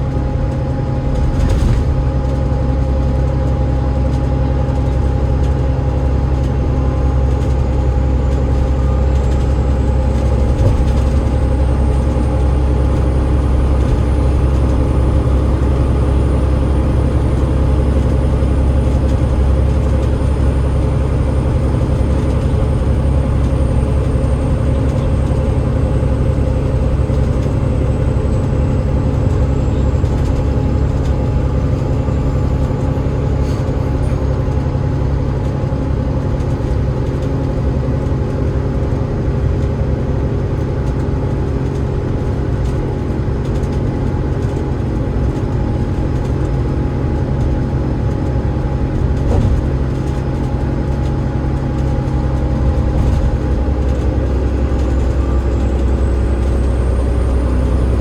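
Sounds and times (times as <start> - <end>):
bus diesel engine rumble: 0.0 - 58.0.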